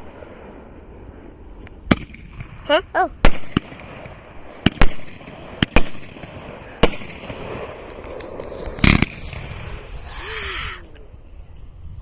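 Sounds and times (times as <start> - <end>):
firework bangs: 0.0 - 10.0
firework hiss: 4.6 - 10.9.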